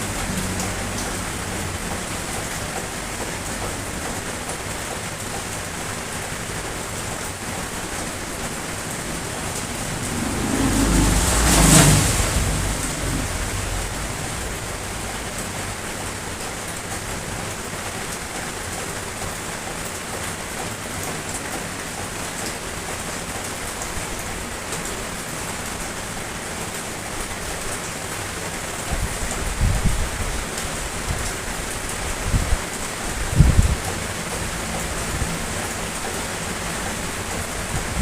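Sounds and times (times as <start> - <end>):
steady rain falling: 0.0 - 38.0
low rumbles: 7.0 - 15.9.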